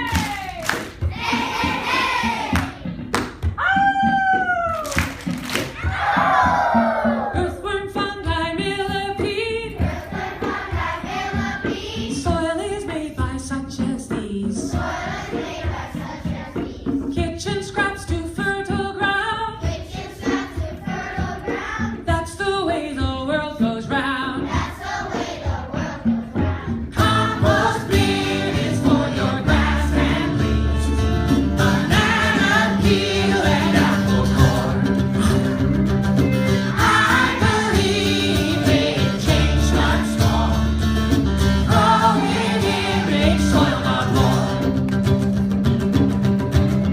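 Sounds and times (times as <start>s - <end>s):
rhythmic backing music: 0.0s - 46.9s
choir singing: 9.8s - 12.2s, 24.4s - 35.5s, 36.7s - 44.8s.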